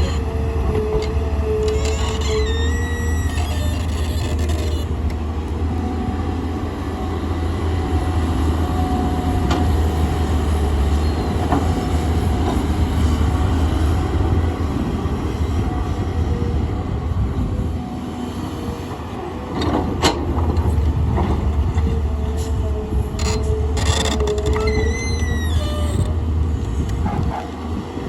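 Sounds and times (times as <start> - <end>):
excavator diesel engine rumbling: 0.0 - 28.0.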